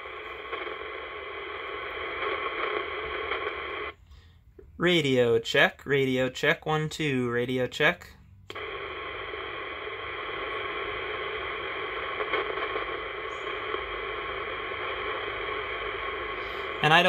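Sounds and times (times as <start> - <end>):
radio static hiss: 0.0 - 4.0, 7.4 - 17.0.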